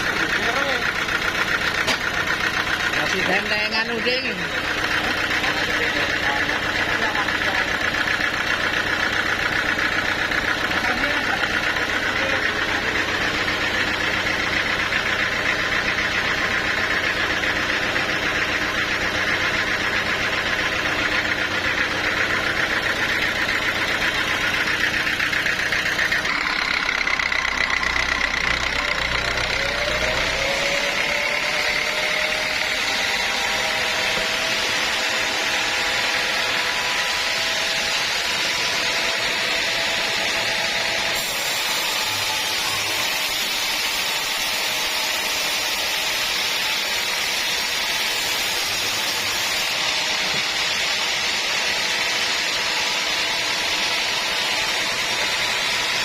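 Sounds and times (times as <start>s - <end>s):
high saw noise: 0.0s - 56.0s
motor humming: 0.0s - 56.0s
rising tone: 21.6s - 41.1s.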